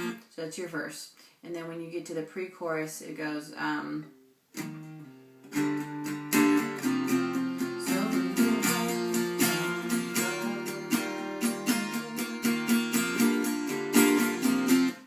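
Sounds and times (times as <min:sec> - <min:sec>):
acoustic guitar strumming chords: 0:04.1 - 0:15.0.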